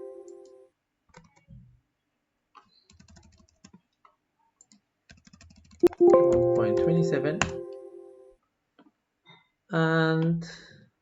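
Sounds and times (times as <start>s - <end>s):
faint keyboard typing: 0.2s - 1.7s, 2.6s - 7.7s.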